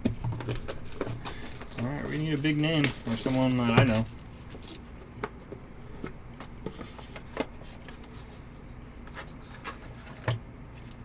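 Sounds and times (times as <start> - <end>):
cards clicking and rubbing: 0.1 - 4.8.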